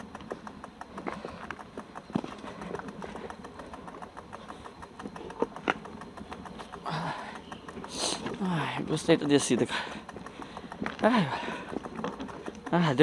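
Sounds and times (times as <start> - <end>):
mountain bike clicking and rattling: 0.0 - 13.0.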